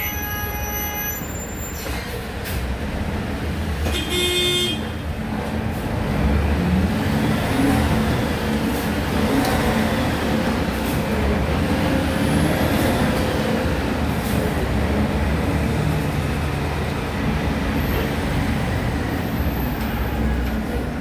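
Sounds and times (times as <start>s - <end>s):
bus engine drone: 4.8s - 21.0s.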